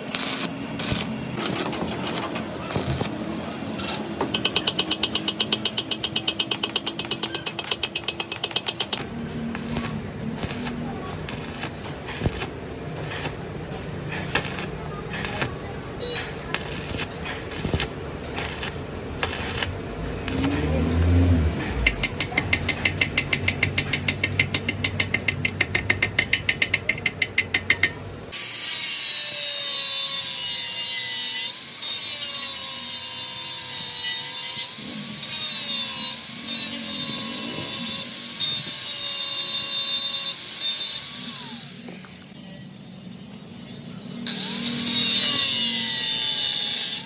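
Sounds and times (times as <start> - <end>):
ratchet clicking: 4.5 - 15.6, 16.5 - 20.8, 21.6 - 28.0.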